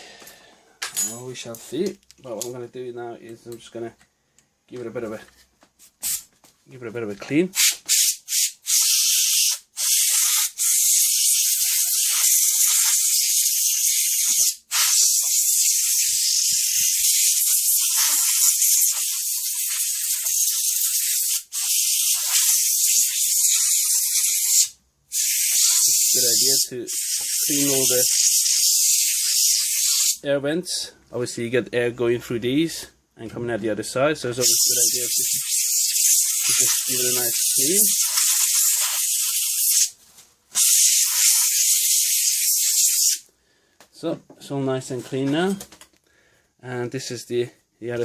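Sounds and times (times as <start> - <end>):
air duster hissing: 7.6 - 30.2, 34.4 - 39.9, 40.6 - 43.2.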